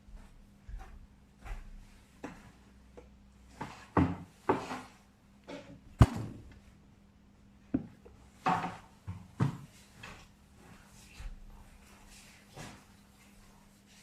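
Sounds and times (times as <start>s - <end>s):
objects knocking and clunking: 7.7s - 9.7s.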